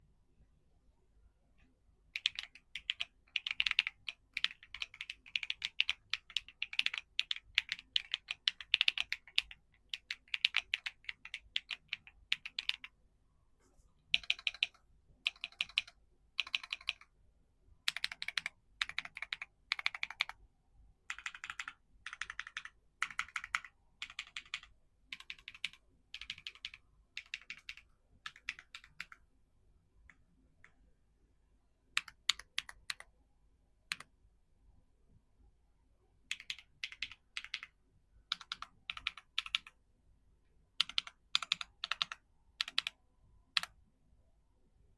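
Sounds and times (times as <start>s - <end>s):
typing on mechanical keyboard: 2.2s - 12.9s, 14.1s - 17.1s, 17.9s - 20.4s, 21.1s - 29.2s, 32.0s - 33.1s, 36.3s - 39.8s, 40.8s - 43.8s.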